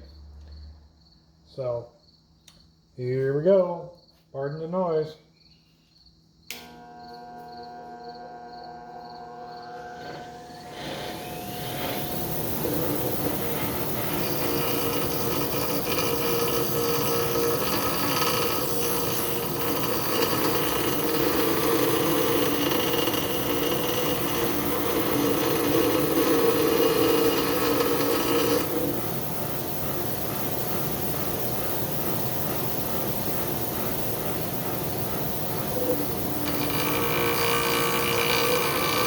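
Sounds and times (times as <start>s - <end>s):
bench grinder motor running: 6.6s - 30.2s, 34.4s - 39.0s
metal grinding rasp: 10.0s - 29.0s, 35.7s - 39.0s.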